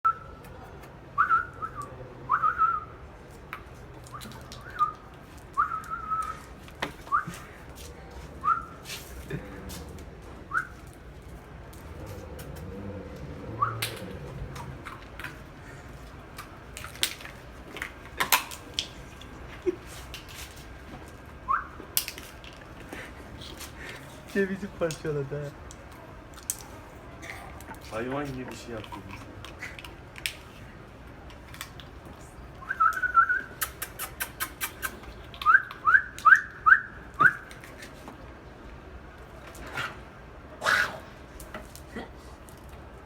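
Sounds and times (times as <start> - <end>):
short high whistle-like calls: 1.2 - 3.0, 5.6 - 6.5, 7.1 - 7.4, 8.4 - 8.8, 13.6 - 13.9, 32.6 - 37.5
dog cracking walnut shell: 16.3 - 19.3.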